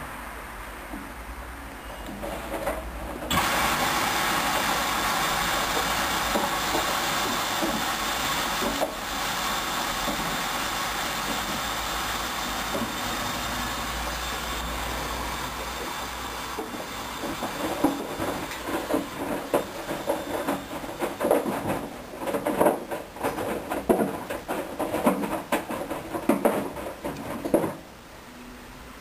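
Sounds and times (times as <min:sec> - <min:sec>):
washing machine rushing hiss: 0:00.0 - 0:22.4
washing machine drum tumbling: 0:02.2 - 0:27.9
water sloshing and knocks: 0:16.6 - 0:27.8.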